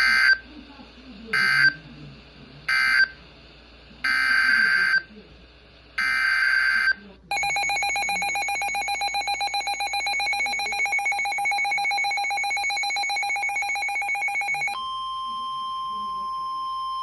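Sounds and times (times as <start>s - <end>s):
fast-pulsing two-tone alert signal: 7.3s - 17.0s
steady high alert tone: 7.3s - 17.0s.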